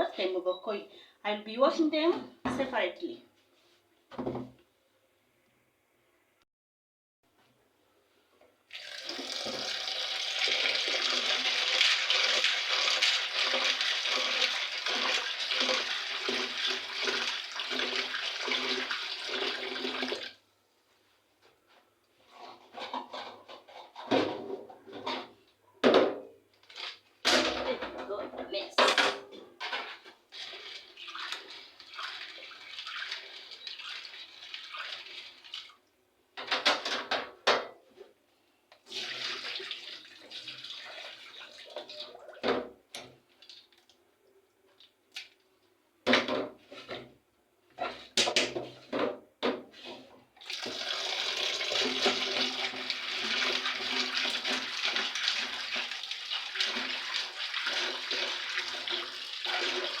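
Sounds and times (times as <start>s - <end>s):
water sloshing in a basin: 29.7s - 35.9s, 38.8s - 45.4s, 50.4s - 60.0s.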